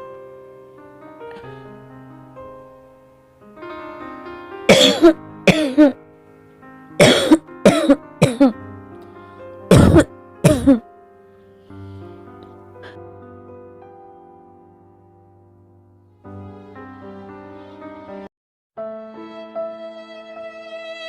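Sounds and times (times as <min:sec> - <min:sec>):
soft piano music: 0:00.0 - 0:21.0
woman coughing: 0:04.7 - 0:06.0, 0:07.0 - 0:08.6, 0:09.7 - 0:10.8.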